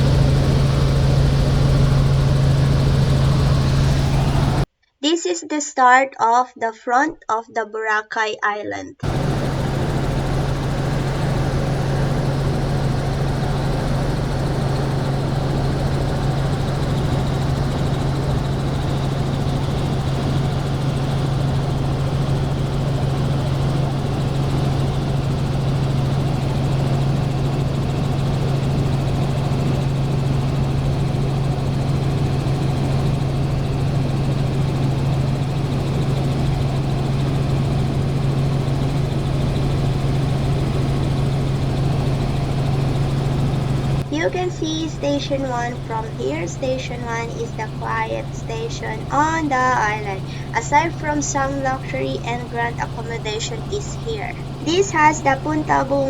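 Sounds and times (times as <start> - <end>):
helicopter engine and rotor drone: 0.0 - 4.7, 9.0 - 56.0.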